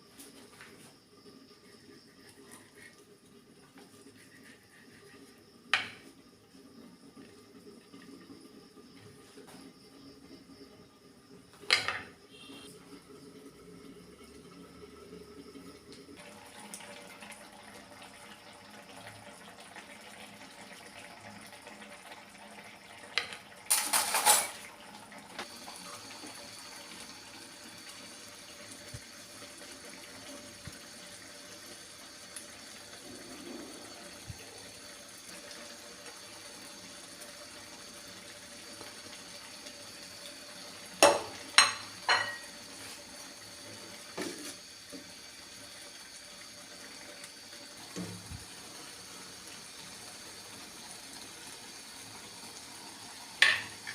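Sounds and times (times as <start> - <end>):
pots and utensils clattering: 23.2 - 24.7, 41.0 - 42.6, 53.4 - 53.9
faint watery hiss: 25.4 - 53.9.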